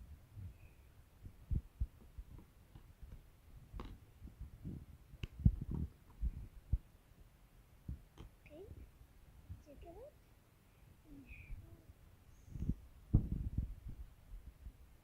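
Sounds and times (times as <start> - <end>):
soft low thuds and bumps: 0.0 - 6.9, 7.8 - 9.7, 12.6 - 15.0.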